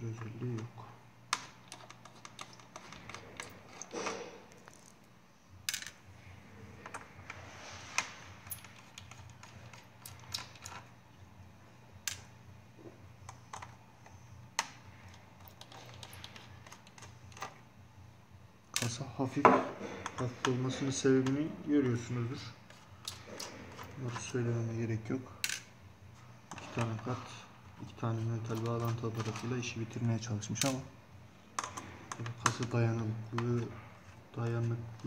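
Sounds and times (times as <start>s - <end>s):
screws and laptop parts clicking: 1.3s - 5.0s, 8.0s - 10.9s, 13.2s - 17.6s.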